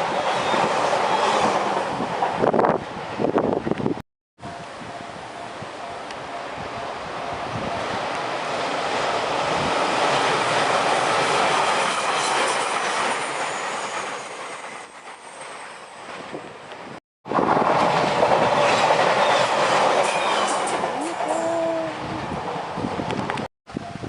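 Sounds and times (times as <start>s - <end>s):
loud train noise: 0.0s - 24.0s
train wheels clattering on rails: 9.1s - 21.0s.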